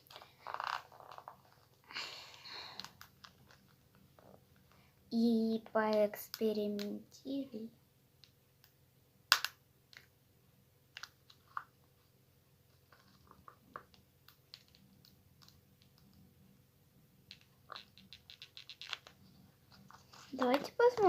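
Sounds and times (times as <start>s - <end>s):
small objects rustling: 0.0s - 4.8s, 12.7s - 16.2s, 17.3s - 21.0s.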